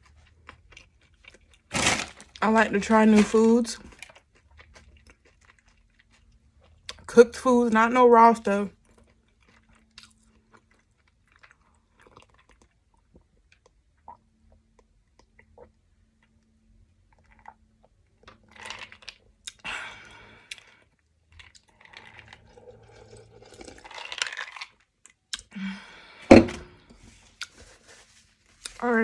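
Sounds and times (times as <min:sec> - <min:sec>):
crunchy chewing: 0:03.9 - 0:07.0.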